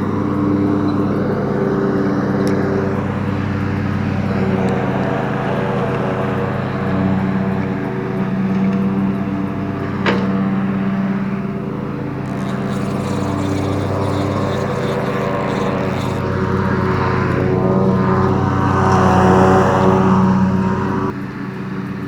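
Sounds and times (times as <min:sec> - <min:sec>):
tractor engine droning: 0:00.0 - 0:22.0.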